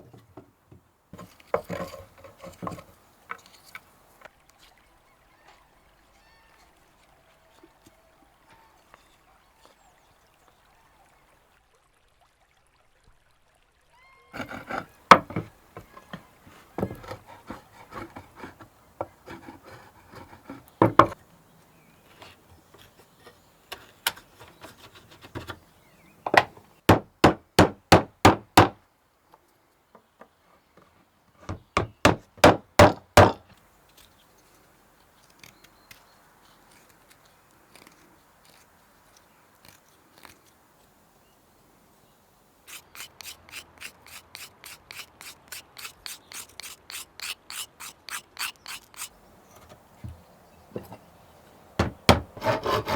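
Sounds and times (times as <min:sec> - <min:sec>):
hand tool strokes on wood: 0:14.4 - 0:21.2, 0:42.7 - 0:49.8, 0:51.8 - 0:52.9
knocks: 0:20.8 - 0:21.2, 0:26.3 - 0:28.8, 0:31.5 - 0:33.4, 0:51.8 - 0:52.9.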